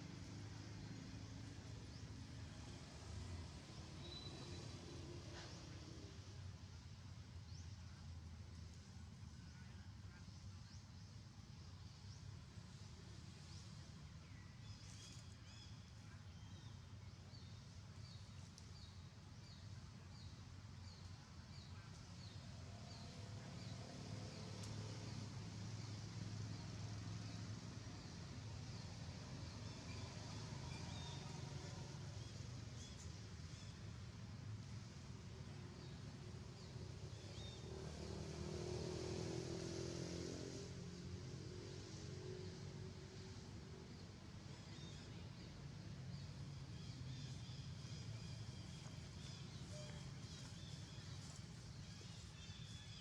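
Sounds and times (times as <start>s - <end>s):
motor vehicle engine passing by: 0.0s - 6.4s, 22.1s - 33.7s, 35.8s - 53.0s.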